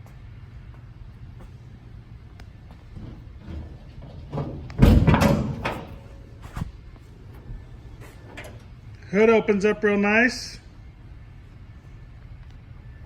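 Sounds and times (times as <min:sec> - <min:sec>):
loud metal clunk with rattle: 0:02.9 - 0:06.7, 0:07.4 - 0:08.8.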